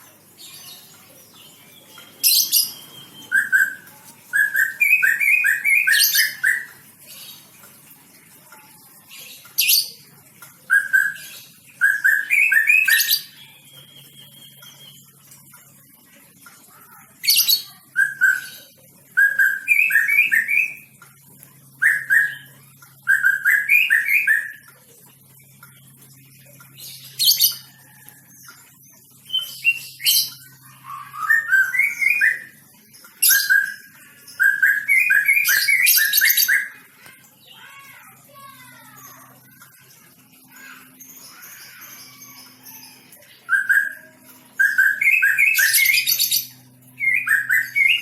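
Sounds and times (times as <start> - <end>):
bird singing whistled notes: 11.8 - 15.1, 43.4 - 48.0.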